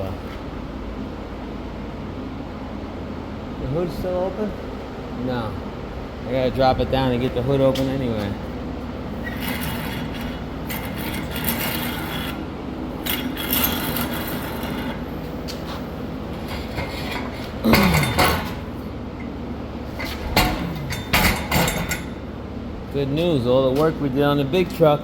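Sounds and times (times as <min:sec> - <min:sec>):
steady low hum: 0:00.0 - 0:25.0
metal tools clinking and knocking: 0:16.5 - 0:19.3, 0:20.0 - 0:22.3.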